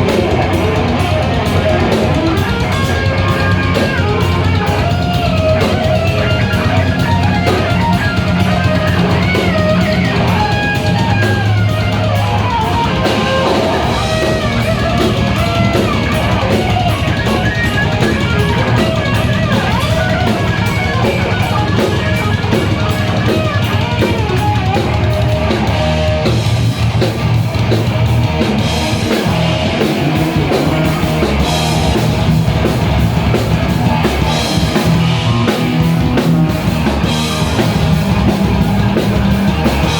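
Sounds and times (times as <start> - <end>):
bending lead guitar line: 0.0 - 39.9
drum kit: 0.0 - 39.9
guitar: 0.0 - 39.9
sustained bass notes: 0.0 - 39.9.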